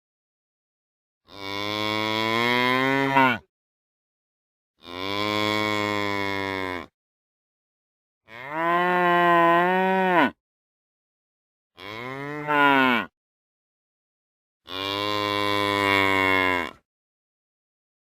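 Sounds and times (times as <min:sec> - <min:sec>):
cows mooing: 0:01.3 - 0:03.4, 0:08.3 - 0:10.4, 0:11.8 - 0:13.1, 0:14.7 - 0:16.8.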